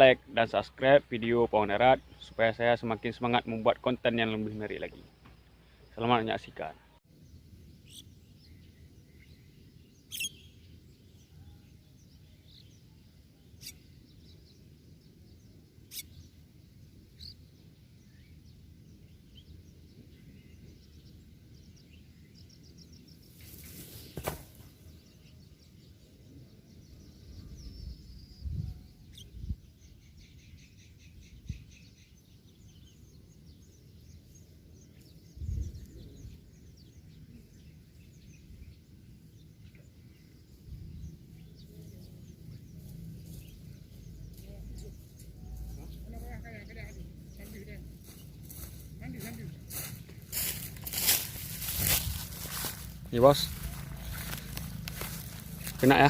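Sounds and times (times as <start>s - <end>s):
birds chirping: 0.0s - 56.0s.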